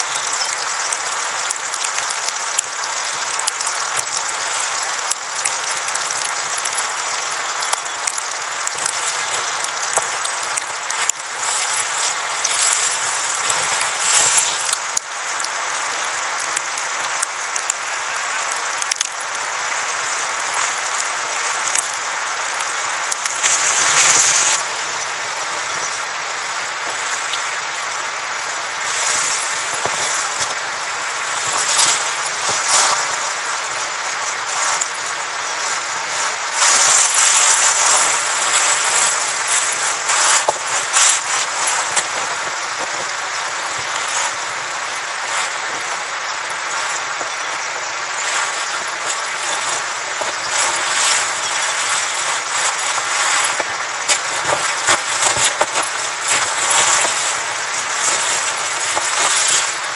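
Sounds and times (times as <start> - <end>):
rushing wind with gusts: 19.4 - 59.9.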